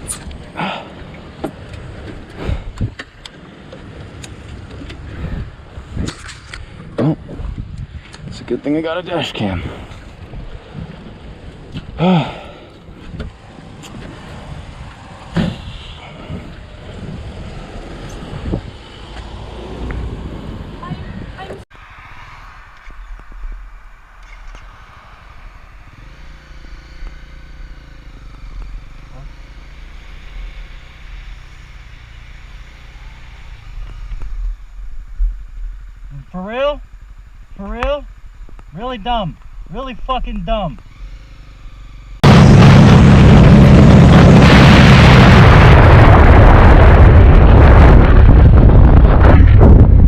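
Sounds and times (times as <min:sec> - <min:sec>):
motorcycle engine rumbling: 0:00.0 - 0:50.0
wind noise on microphone: 0:02.2 - 0:03.1, 0:04.6 - 0:08.5, 0:12.8 - 0:26.1, 0:42.2 - 0:50.0.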